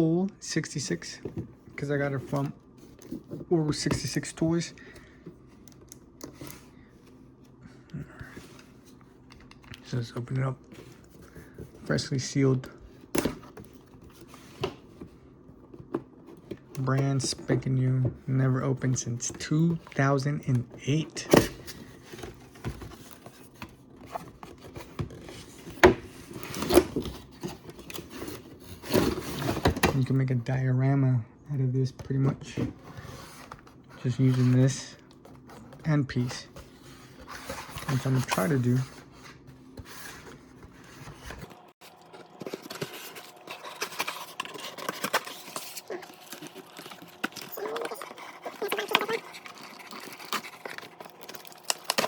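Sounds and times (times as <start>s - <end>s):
cardboard packaging rubbing and scraping: 21.6s - 30.0s, 32.5s - 52.0s.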